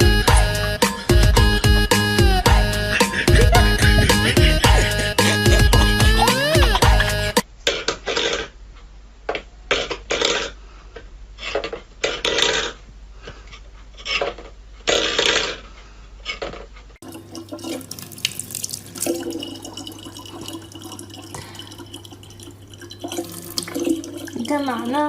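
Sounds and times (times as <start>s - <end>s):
low electrical hum: 3.2s - 25.0s
water running from a tap: 17.0s - 25.0s
water splashing: 17.0s - 25.0s.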